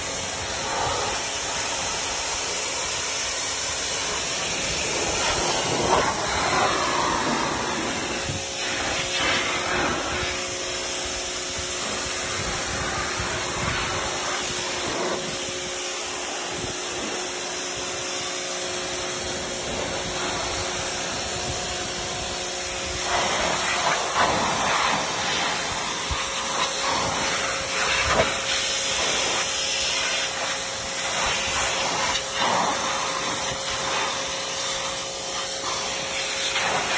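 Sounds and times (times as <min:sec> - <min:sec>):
motor hum: 0:00.0 - 0:28.4
pressure washer water jet hissing: 0:00.0 - 0:36.9.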